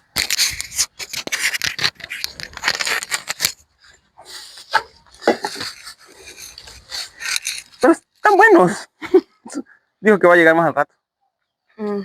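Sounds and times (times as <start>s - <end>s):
dry material rustling and scraping: 0.1s - 8.4s.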